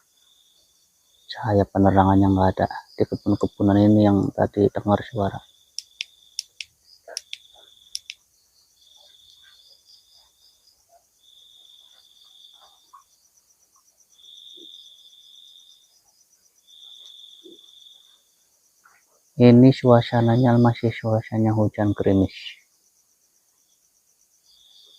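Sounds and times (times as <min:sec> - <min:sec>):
faint continuous chirring: 0:00.0 - 0:24.9
insects trilling in buzzy bursts: 0:00.0 - 0:24.9
sharp clicks: 0:05.8 - 0:08.2.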